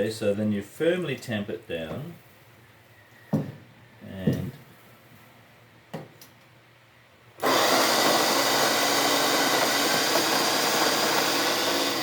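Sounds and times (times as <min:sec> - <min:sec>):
coffee grinder motor grinding: 0:07.4 - 0:12.0.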